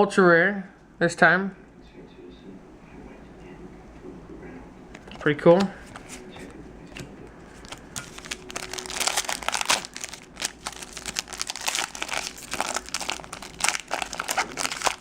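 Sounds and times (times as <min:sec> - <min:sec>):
foil wrapper crinkling: 0:07.5 - 0:15.0.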